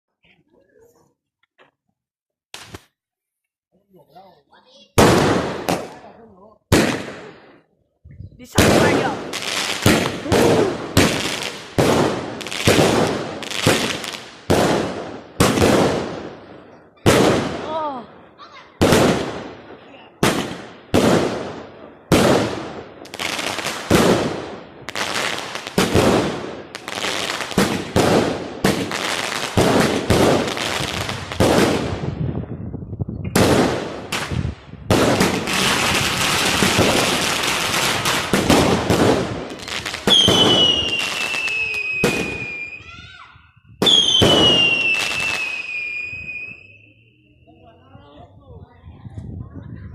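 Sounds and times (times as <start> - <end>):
firework crackling: 2.5 - 3.0, 8.4 - 32.4, 33.4 - 43.1, 43.8 - 46.9
firework bangs: 4.9 - 7.6, 8.4 - 32.6, 33.3 - 43.2, 43.8 - 46.8
firework whistles: 40.1 - 43.1, 43.8 - 47.2.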